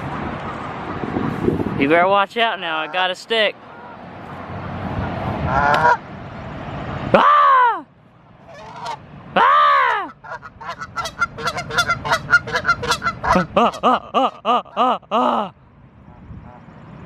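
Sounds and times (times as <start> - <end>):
goose honking: 5.5 - 6.0, 8.5 - 9.0, 10.2 - 14.4
person shouting: 7.2 - 7.9, 9.4 - 10.2.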